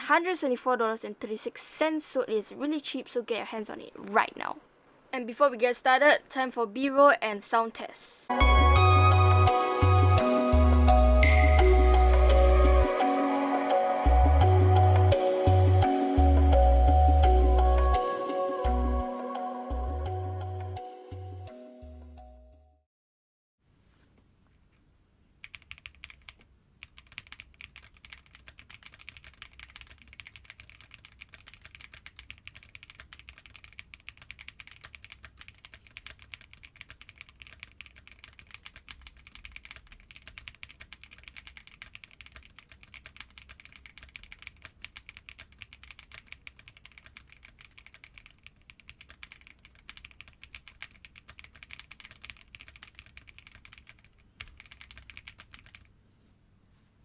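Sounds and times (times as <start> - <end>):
mechanical keyboard typing: 25.4 - 55.9.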